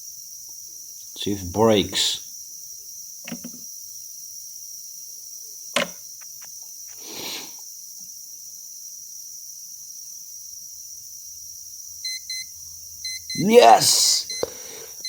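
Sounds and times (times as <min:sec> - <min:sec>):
steady high-pitched hiss: 0:00.0 - 0:15.0
sharp clicks: 0:05.8 - 0:06.5.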